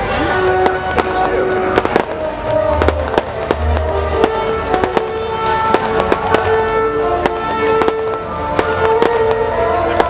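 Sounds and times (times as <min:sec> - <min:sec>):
fireworks bangs and crackles: 0:00.0 - 0:10.0
music with long held notes: 0:00.0 - 0:10.0.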